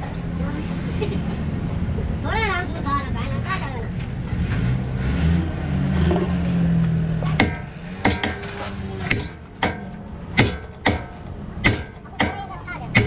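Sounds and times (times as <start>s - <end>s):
low engine drone: 4.0s - 13.0s.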